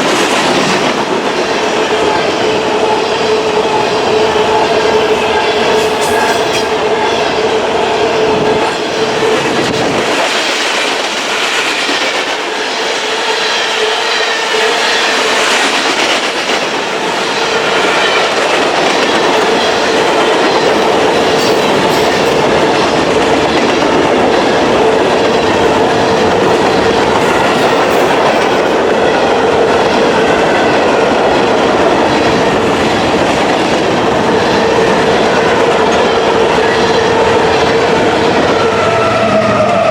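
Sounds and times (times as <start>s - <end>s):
low train rumble: 0.0s - 39.9s
train wheels clattering over rail joints: 17.7s - 28.9s.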